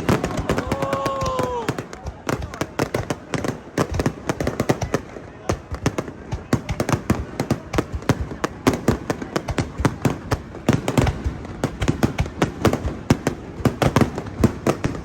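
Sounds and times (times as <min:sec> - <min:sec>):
deep fireworks booms: 0:00.0 - 0:15.0
fireworks cracks and bangs: 0:00.0 - 0:15.0.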